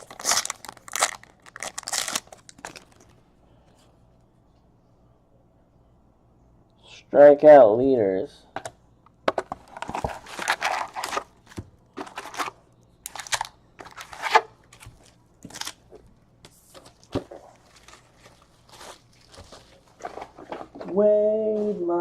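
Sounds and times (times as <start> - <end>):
cards rustling and sliding: 9.4 - 15.8.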